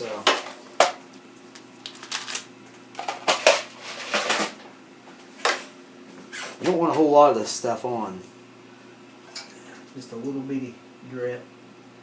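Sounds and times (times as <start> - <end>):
faint steady hum: 0.0 - 12.0
plastic parts rustling and clicking: 1.8 - 4.6.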